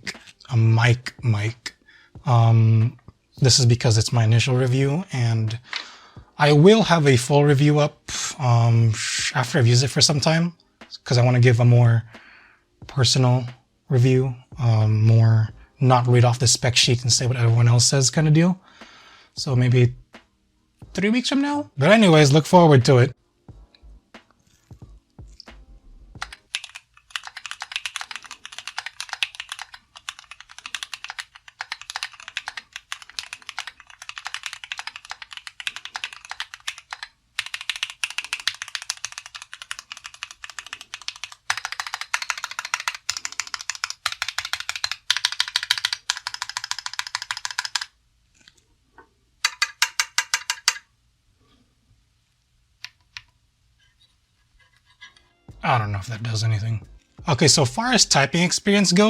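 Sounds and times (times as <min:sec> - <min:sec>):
mechanical keyboard typing: 0:26.2 - 0:47.9, 0:49.4 - 0:50.8.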